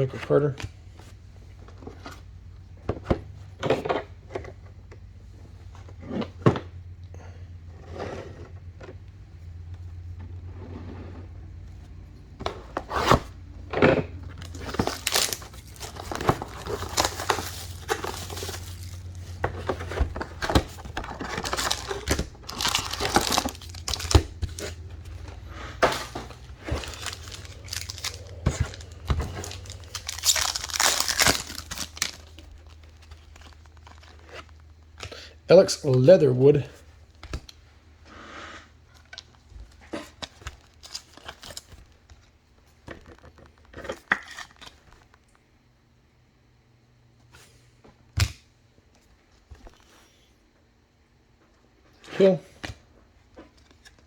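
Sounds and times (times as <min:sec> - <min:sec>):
low steady hum: 0:00.0 - 0:54.0
crinkling wrappers: 0:14.3 - 0:35.2, 0:39.0 - 0:42.2
wrappers torn and crumpled: 0:14.4 - 0:34.7, 0:39.9 - 0:42.0.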